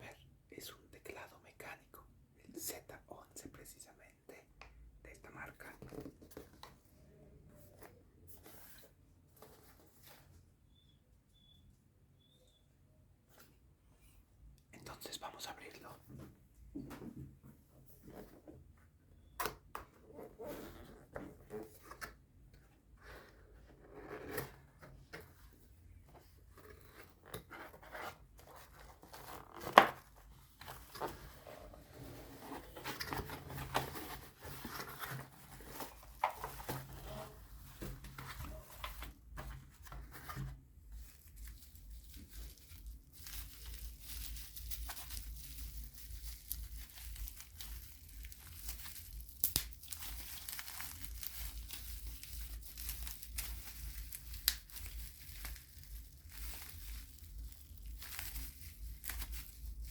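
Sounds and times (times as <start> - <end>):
wrapping crinkling and tearing: 39.8 - 59.9.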